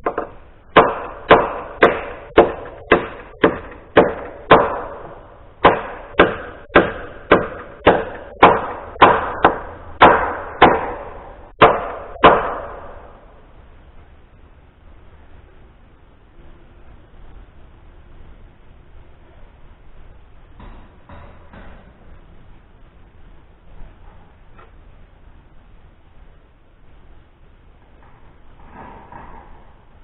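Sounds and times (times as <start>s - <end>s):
hammer driving nails into wood: 0.0s - 13.0s.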